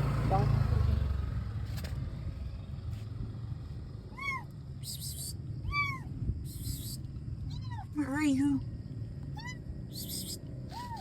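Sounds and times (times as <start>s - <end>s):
low rumble: 0.0s - 8.0s
kitten meowing: 4.1s - 8.0s, 9.4s - 11.0s.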